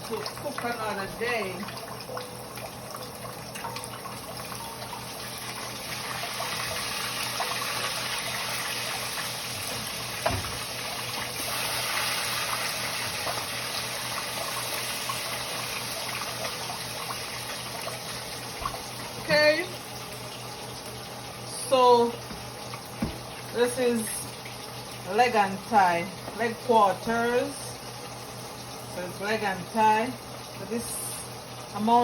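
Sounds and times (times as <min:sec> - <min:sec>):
kitchen tap running into sink: 0:00.0 - 0:32.0
brief knock: 0:23.0 - 0:23.2.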